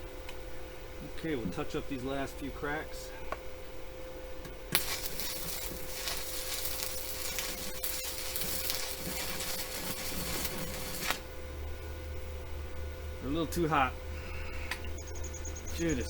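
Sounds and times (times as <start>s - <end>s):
arc striking crack: 4.7s - 11.3s
welding arc crackling and sizzling: 4.7s - 11.7s.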